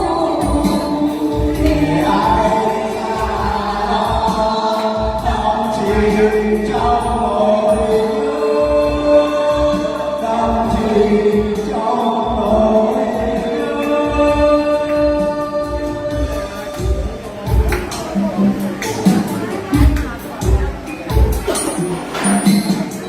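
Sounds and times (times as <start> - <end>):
choir-like chord music: 0.0 - 17.6.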